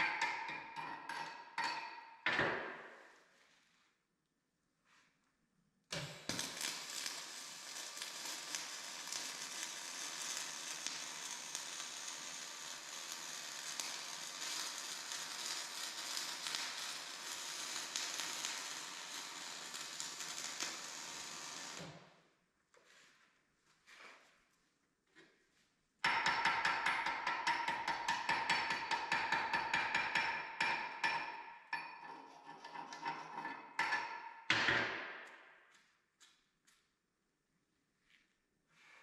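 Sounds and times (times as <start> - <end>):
welding arc crackling: 6.0 - 22.0.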